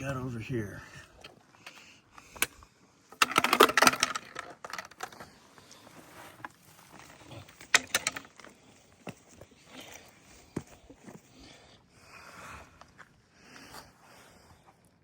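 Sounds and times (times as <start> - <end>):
footsteps on rocky trail: 5.2 - 7.7, 8.4 - 11.6.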